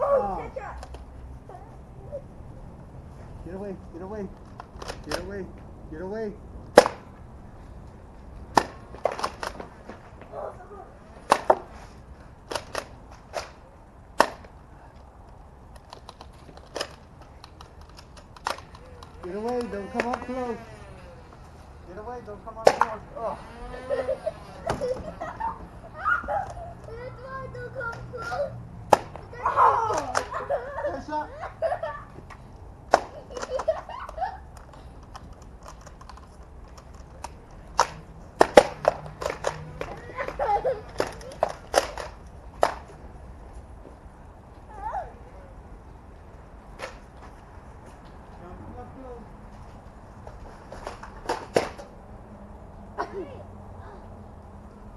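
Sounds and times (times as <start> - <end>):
toy blasters snapping: 4.5 - 5.3, 6.7 - 7.0, 8.5 - 9.6, 12.5 - 13.6, 14.2 - 14.5, 15.7 - 21.1, 22.6 - 23.0, 32.9 - 40.0, 40.9 - 42.9.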